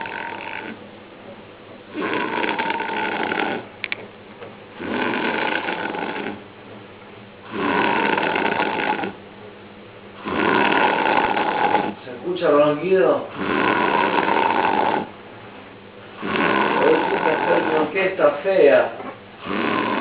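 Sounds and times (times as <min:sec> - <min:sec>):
person snoring heavily: 0:00.0 - 0:00.8, 0:01.9 - 0:03.7, 0:04.8 - 0:06.4, 0:07.4 - 0:09.2, 0:10.2 - 0:12.0, 0:13.3 - 0:15.1, 0:16.2 - 0:17.9, 0:19.4 - 0:20.0.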